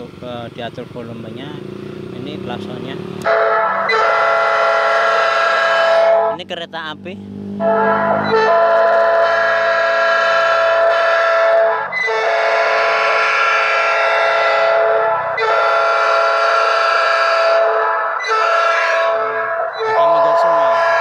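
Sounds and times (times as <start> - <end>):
electronic train horn blasts: 3.2 - 6.4, 7.5 - 21.0.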